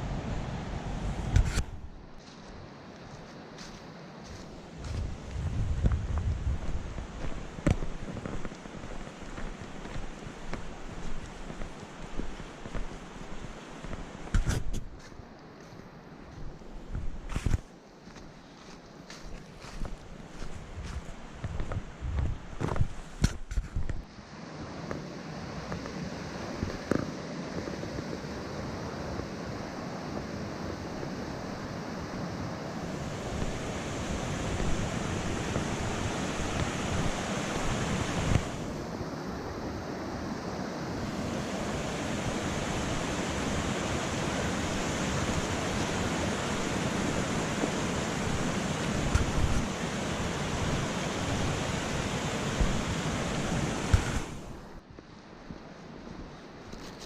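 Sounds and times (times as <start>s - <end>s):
white water rushing: 0.0s - 1.4s, 24.1s - 54.8s
wind on microphone: 0.0s - 2.0s, 4.8s - 15.0s, 19.8s - 55.0s.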